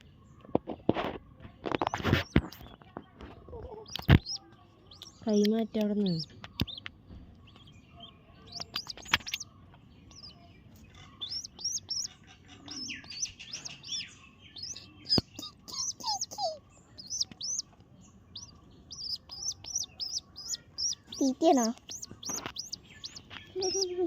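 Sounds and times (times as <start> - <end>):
baby pigeon cheeping: 0.0 - 24.0
sharp clicks: 3.9 - 7.7, 8.5 - 9.4.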